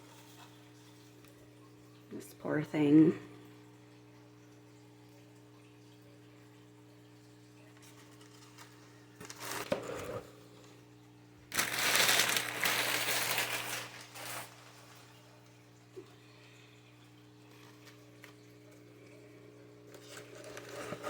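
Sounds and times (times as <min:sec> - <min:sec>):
packing material crinkling: 0:11.5 - 0:15.1.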